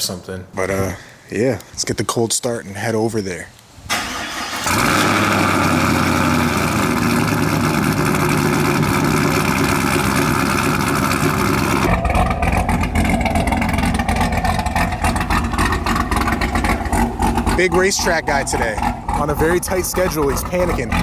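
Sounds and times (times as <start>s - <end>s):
car engine idling: 4.4s - 21.0s.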